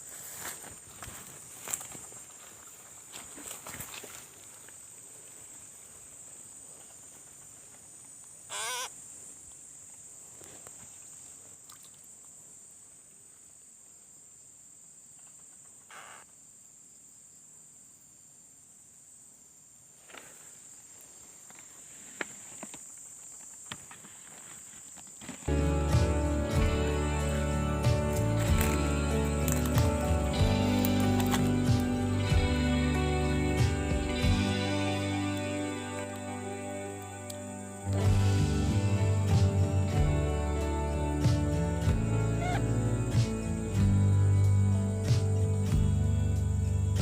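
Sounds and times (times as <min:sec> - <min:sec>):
wavering animal call: 0:08.5 - 0:08.9, 0:42.1 - 0:43.0
high-pitched insect drone: 0:08.5 - 0:09.0, 0:25.4 - 0:47.0.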